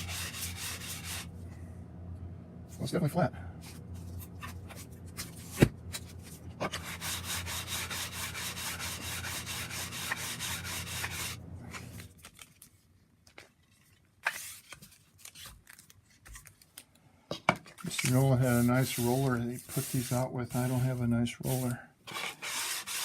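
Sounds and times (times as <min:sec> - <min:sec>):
blade scraping on sandpaper: 0:00.0 - 0:01.3, 0:06.6 - 0:11.4, 0:18.1 - 0:23.0.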